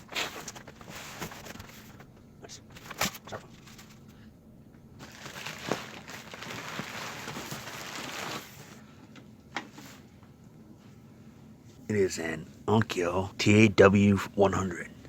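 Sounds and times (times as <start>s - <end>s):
rustling: 0.0s - 2.1s, 5.0s - 8.9s.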